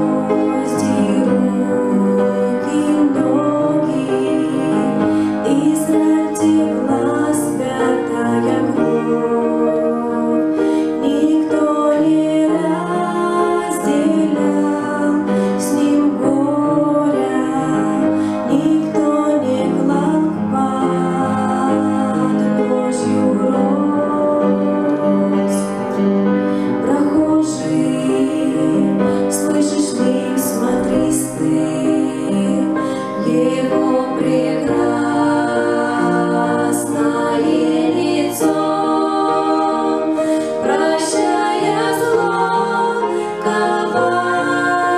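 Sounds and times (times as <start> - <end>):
choir singing a hymn: 0.0 - 44.9
instrumental accompaniment: 0.0 - 44.9.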